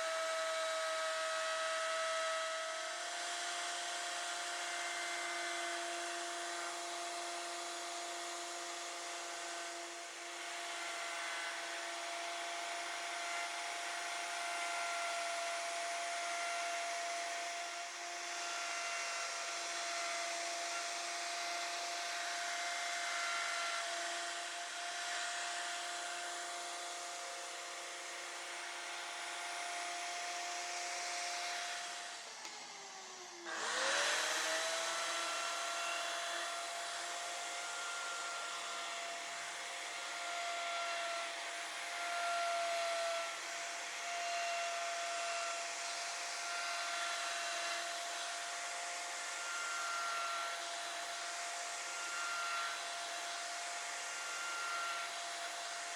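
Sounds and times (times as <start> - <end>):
router spindle high whine: 0.0 - 55.9
hiss of bit cutting wood: 33.4 - 55.9.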